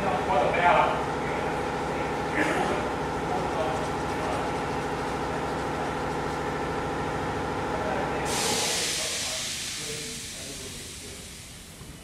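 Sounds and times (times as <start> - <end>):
mechanical hum with tones: 0.0 - 12.0
loud hiss: 8.2 - 12.0.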